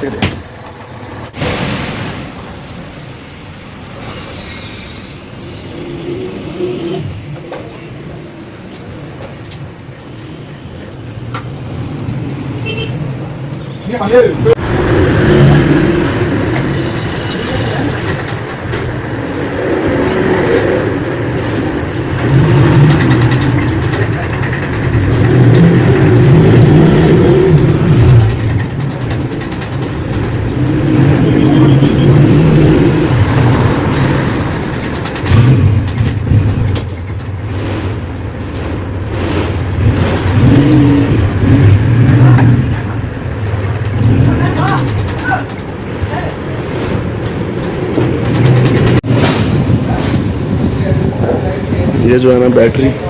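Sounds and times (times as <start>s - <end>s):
motorcycle engine revving: 22.0s - 28.7s, 39.0s - 43.1s.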